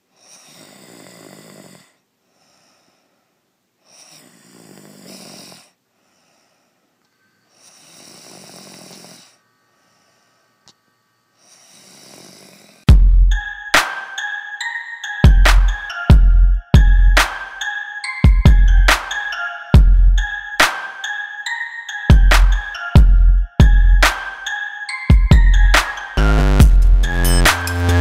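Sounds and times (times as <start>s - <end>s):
woman snoring: 0.1s - 2.0s, 3.9s - 5.8s, 7.6s - 10.4s, 11.4s - 12.9s
electronic music with heavy bass: 12.9s - 14.1s, 15.2s - 17.6s, 18.3s - 19.2s, 22.1s - 24.5s, 25.1s - 28.0s.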